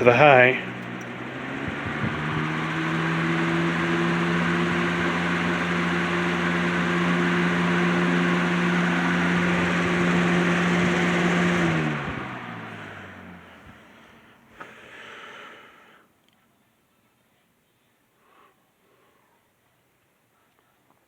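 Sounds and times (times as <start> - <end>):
box fan running: 0.0 - 16.0.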